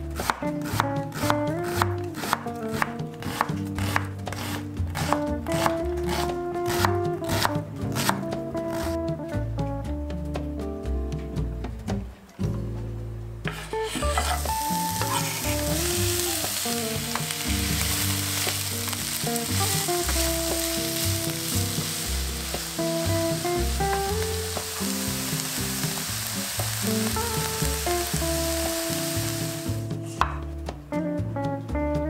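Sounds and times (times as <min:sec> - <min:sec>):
background music: 0:00.0 - 0:32.0
food sizzling in a hot pan: 0:13.8 - 0:29.9.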